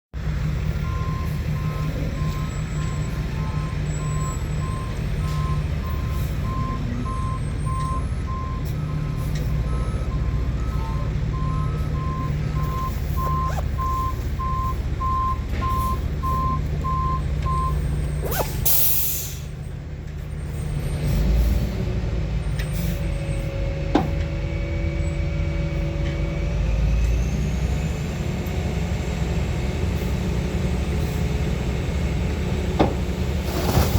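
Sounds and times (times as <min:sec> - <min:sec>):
diesel engine running: 0:00.2 - 0:33.9
reversing alarm beeps: 0:00.8 - 0:17.8
air brakes hissing: 0:18.2 - 0:19.6.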